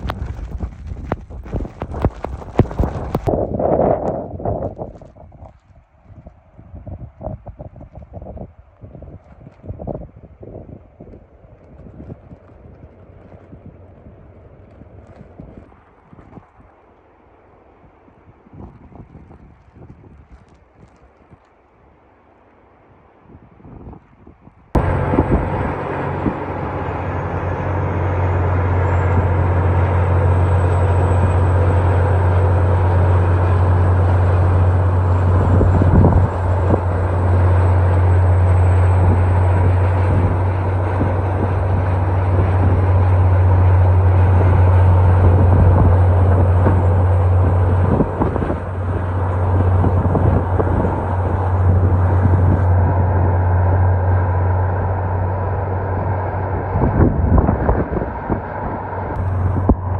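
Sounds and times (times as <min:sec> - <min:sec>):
rushing road noise: 0:00.0 - 0:05.1, 0:24.8 - 0:59.9
vehicle engine and road drone: 0:00.0 - 0:18.1, 0:24.7 - 0:59.9.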